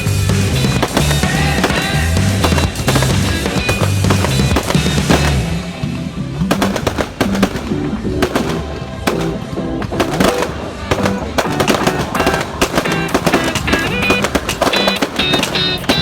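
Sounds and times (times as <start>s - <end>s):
background music: 0.0s - 16.0s
fireworks bangs and crackles: 0.0s - 16.0s.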